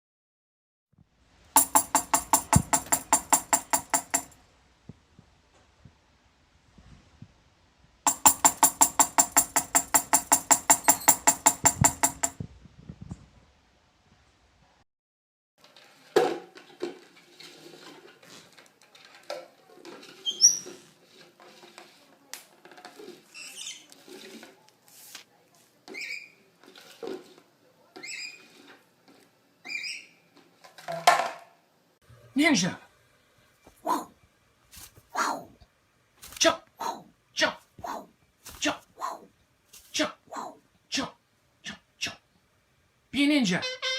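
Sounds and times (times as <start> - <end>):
wood block clicks: 1.6 - 4.3, 8.1 - 12.3
faint scattered taps: 1.6 - 4.4
short high squeaks: 20.2 - 20.8
small animal scuffling: 34.7 - 35.1, 38.4 - 38.9.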